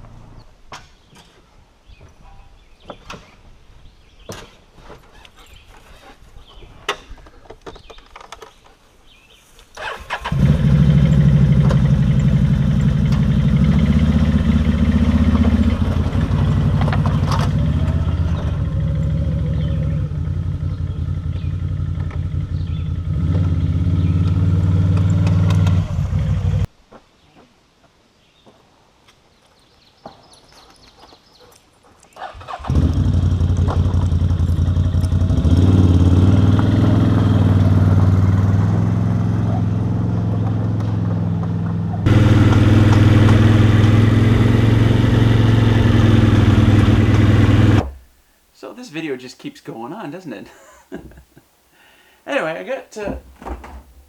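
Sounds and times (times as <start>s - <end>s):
vehicle engine running loudly: 10.3s - 26.7s, 32.7s - 47.9s.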